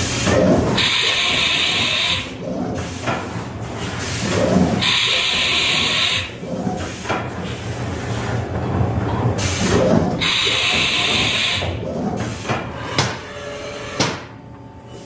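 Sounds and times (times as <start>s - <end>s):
machinery humming: 0.0s - 15.0s
sharp knocks: 13.0s - 13.2s, 14.0s - 14.3s.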